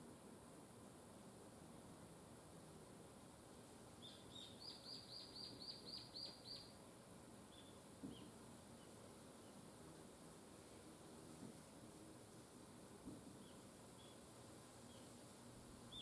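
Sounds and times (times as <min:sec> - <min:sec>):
faint outdoor hiss: 0:00.0 - 0:16.0
small bird chirping: 0:04.0 - 0:06.8, 0:07.4 - 0:09.6, 0:13.4 - 0:15.2.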